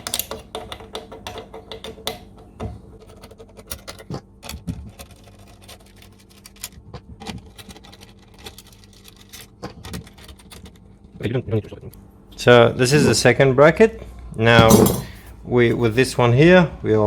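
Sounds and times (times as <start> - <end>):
metal parts clicking and scraping: 3.0 - 10.9, 14.6 - 15.3.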